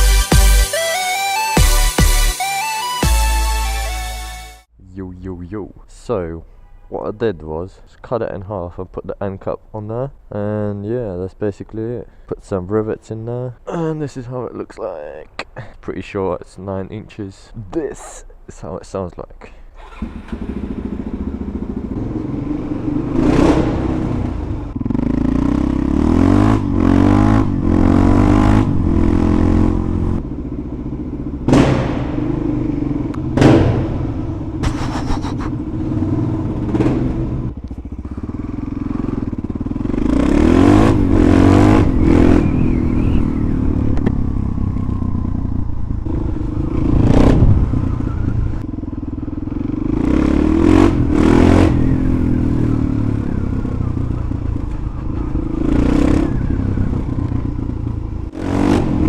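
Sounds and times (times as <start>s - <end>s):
motorcycle engine idling and revving: 19.7s - 59.0s.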